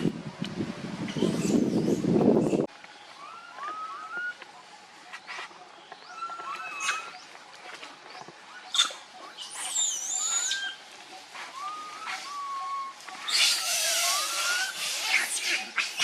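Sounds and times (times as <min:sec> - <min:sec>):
baby monkey squeaking coos: 0:11.6 - 0:16.0.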